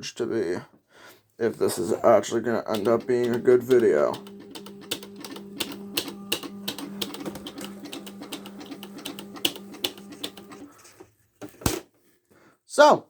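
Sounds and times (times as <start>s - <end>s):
typewriter steady hum: 2.2s - 10.7s
typewriter keystroke clicks: 2.7s - 10.6s.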